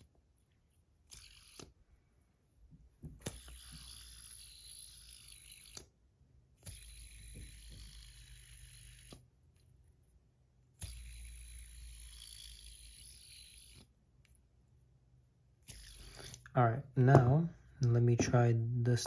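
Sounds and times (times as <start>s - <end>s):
fidget spinner bearing whirring: 0.8s - 1.8s, 3.1s - 6.0s, 6.6s - 9.3s, 10.7s - 14.4s, 15.6s - 16.5s.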